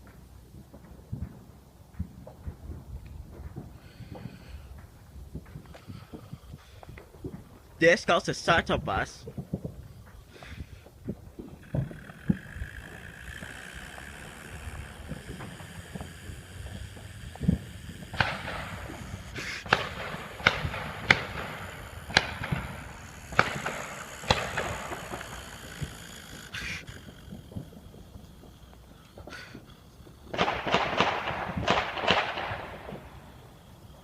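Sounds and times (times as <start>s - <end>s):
fireworks dull thuds: 0.0s - 7.8s, 8.8s - 33.9s
fireworks sharp cracks with hiss: 0.0s - 34.0s.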